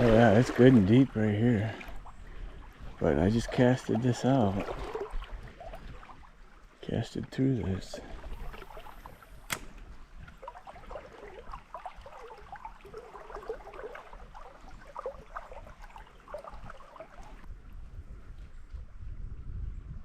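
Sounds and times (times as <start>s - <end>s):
water babbling over rocks: 0.0s - 9.4s, 10.1s - 17.5s
sharp click: 9.4s - 9.8s.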